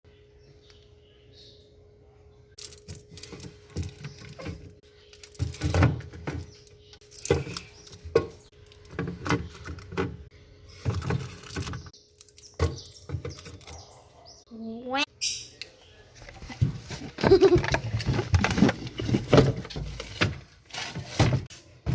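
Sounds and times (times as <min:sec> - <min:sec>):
refrigerator hum: 0:00.1 - 0:14.0
containers and shelves clattering: 0:02.6 - 0:13.9, 0:16.2 - 0:21.9.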